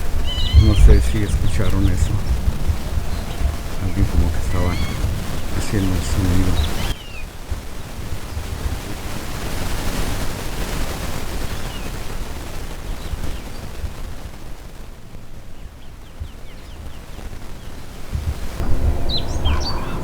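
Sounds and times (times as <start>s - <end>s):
faint high bird chirps: 0.0s - 7.4s, 15.5s - 20.0s
wind buffeting microphone: 0.0s - 20.0s.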